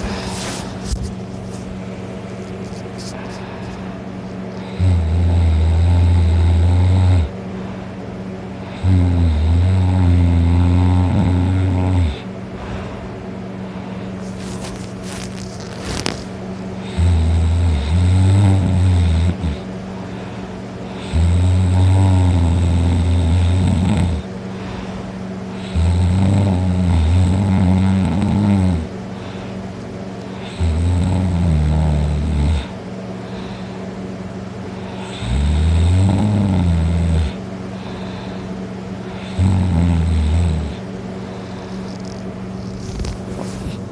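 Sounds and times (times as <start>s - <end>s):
person snoring loudly: 4.6s - 7.4s, 8.6s - 12.9s, 16.8s - 19.7s, 20.9s - 24.8s, 25.5s - 29.4s, 30.4s - 33.7s, 34.8s - 40.8s.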